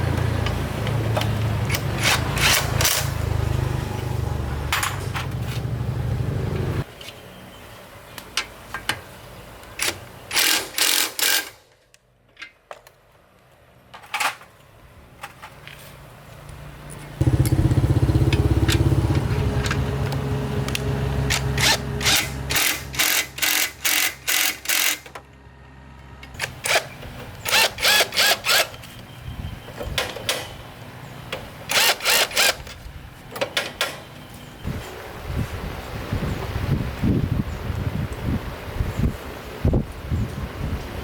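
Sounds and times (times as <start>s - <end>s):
small motorbike engine running: 17.2s - 23.6s.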